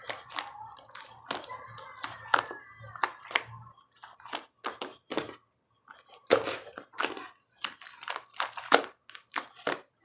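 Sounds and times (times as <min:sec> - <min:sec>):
slime squishing and popping: 0:00.0 - 0:05.4, 0:06.0 - 0:10.0.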